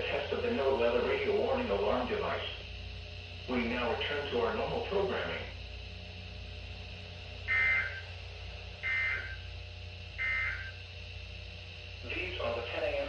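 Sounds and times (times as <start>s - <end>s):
steady low hum: 0.0s - 13.0s
harsh electronic data warbles: 7.5s - 8.1s, 8.8s - 9.5s, 10.2s - 10.8s.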